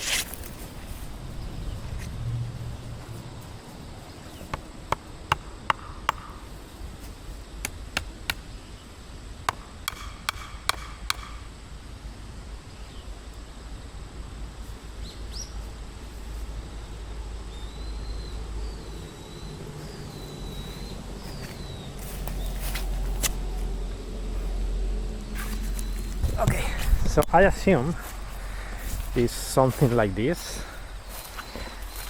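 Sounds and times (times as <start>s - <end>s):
sharp ringing knocks: 9.5s - 11.5s
bird chirping: 16.8s - 23.1s.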